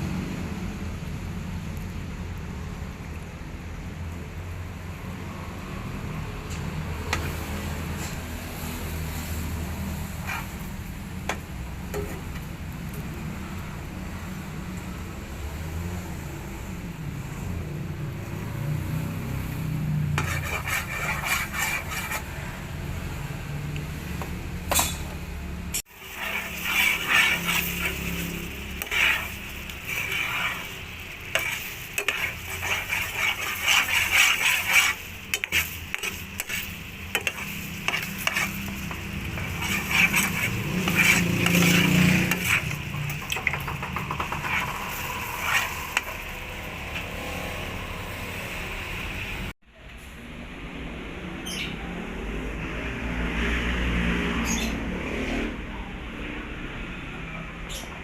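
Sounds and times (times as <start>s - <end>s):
stirring and scraping a pan: 6.6s - 13.2s, 20.0s - 23.0s, 25.8s - 47.8s
fruit sizzling in a pan: 25.9s - 47.8s.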